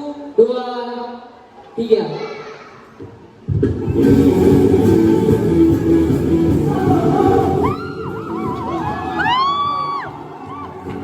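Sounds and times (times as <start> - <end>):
worship music with bass and chords: 3.6 - 11.0.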